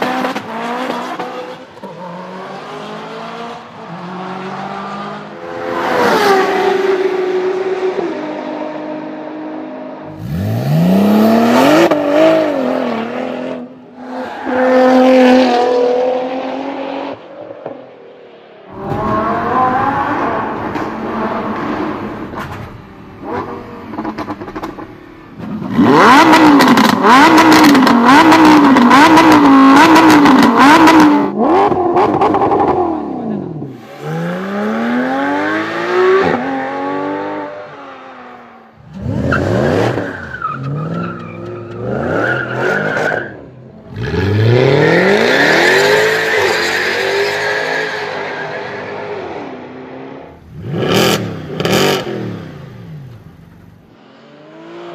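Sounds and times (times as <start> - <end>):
car engines revving: 0.0 - 54.9
exhaust crackles and pops: 23.9 - 25.6.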